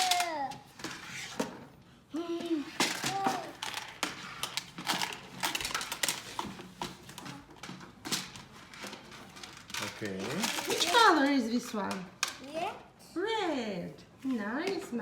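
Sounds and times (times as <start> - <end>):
child vocal sounds: 0.0 - 0.6
plastic toys clattering: 0.0 - 12.7.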